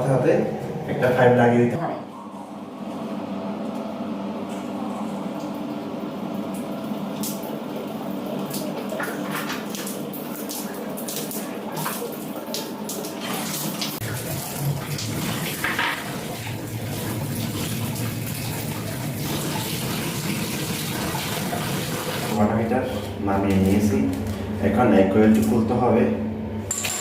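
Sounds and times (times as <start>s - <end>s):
water running through pipe: 6.2s - 22.6s.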